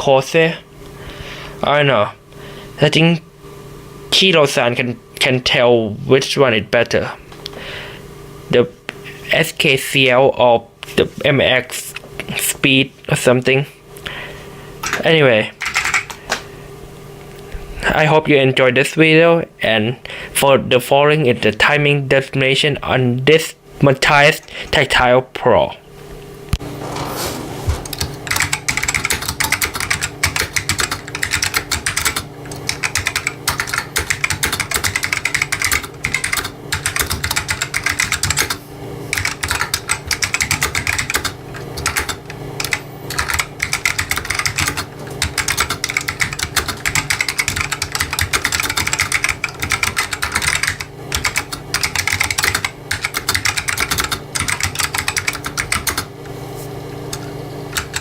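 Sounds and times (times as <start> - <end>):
steady low hum: 0.0 - 58.0
fast typing on mechanical keyboard: 15.6 - 16.1, 27.9 - 56.1, 57.7 - 58.0.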